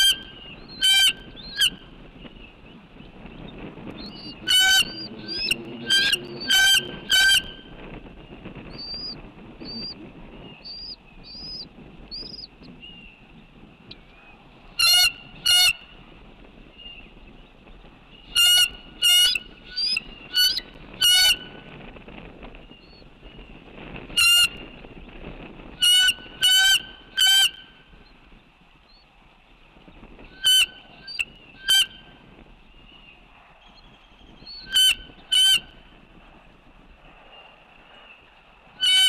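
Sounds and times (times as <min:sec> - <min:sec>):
geese honking: 0:04.2 - 0:07.6, 0:25.8 - 0:27.6, 0:38.8 - 0:39.0.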